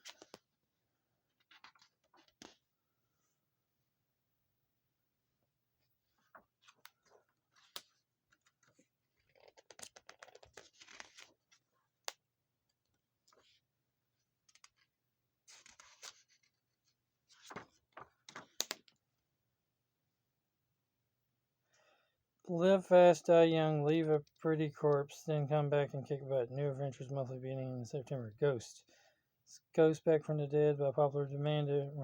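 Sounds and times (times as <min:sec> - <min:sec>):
comic book pages turning: 0:06.2 - 0:11.7, 0:15.5 - 0:19.0.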